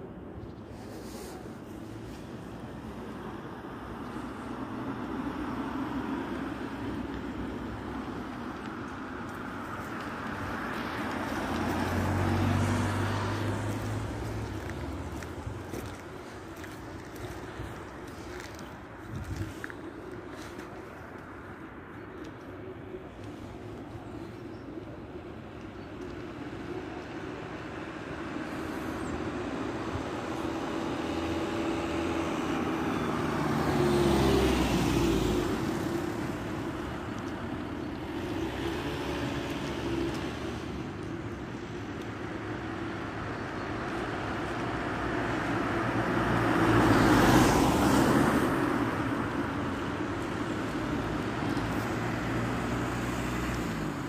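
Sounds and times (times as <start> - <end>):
vehicles passing: 0.0 - 54.0.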